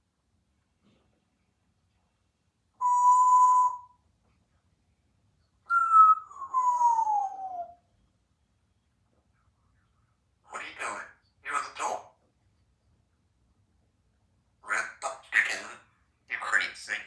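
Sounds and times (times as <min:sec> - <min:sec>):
parrot whistling: 0:02.8 - 0:04.0, 0:05.7 - 0:07.8.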